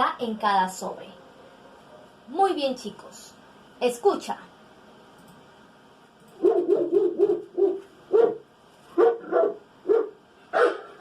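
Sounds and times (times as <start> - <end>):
dog barking: 6.4 - 11.0.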